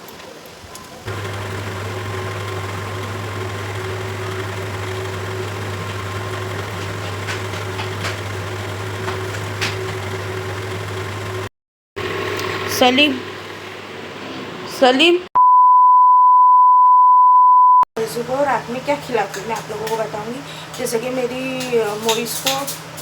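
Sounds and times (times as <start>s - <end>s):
appliance motor humming: 1.1s - 11.5s.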